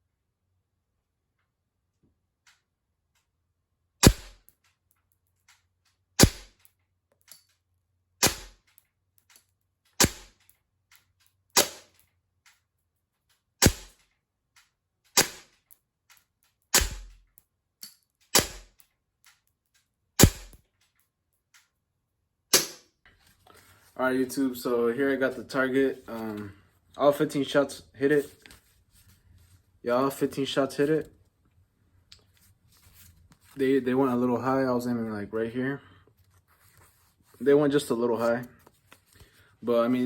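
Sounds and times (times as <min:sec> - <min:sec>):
airsoft pistol shots: 0:04.0 - 0:04.4, 0:06.2 - 0:06.6, 0:08.2 - 0:08.6, 0:10.0 - 0:10.4, 0:11.6 - 0:12.0, 0:13.6 - 0:14.0, 0:15.2 - 0:15.6, 0:16.7 - 0:17.2, 0:18.3 - 0:18.8, 0:20.2 - 0:20.6, 0:22.5 - 0:22.9.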